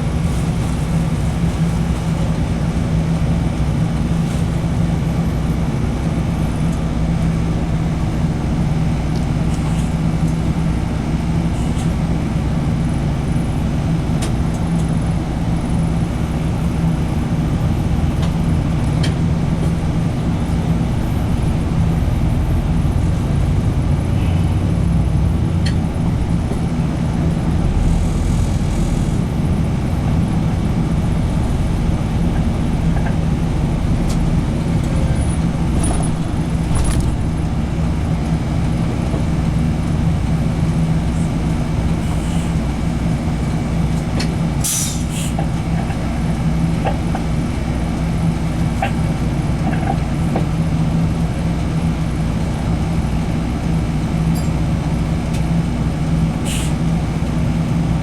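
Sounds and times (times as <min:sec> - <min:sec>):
bus engine drone and road noise: 0:00.0 - 0:58.0
brief high hiss: 0:56.4 - 0:56.7.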